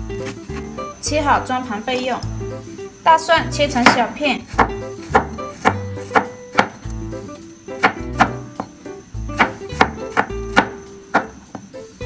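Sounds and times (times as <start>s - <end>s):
background music with bass: 0.0s - 1.6s, 2.2s - 12.0s
knife chopping on cutting board: 4.6s - 6.8s, 7.8s - 8.7s, 9.4s - 11.6s.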